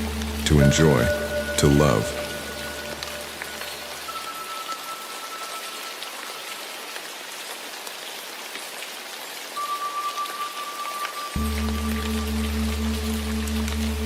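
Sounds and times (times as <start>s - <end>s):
faint high ringing tone: 0.0s - 6.6s, 9.6s - 12.3s
steady rain falling: 0.0s - 14.0s.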